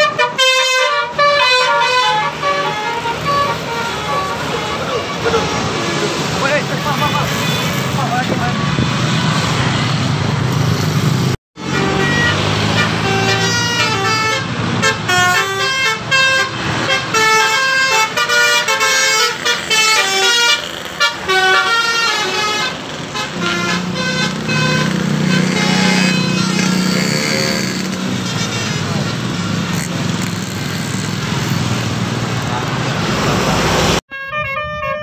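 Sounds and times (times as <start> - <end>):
multi-tone air horn tune: 0.0 - 5.7, 11.6 - 28.8, 34.1 - 35.0
road noise: 0.0 - 35.0
bus engine running: 8.7 - 34.0.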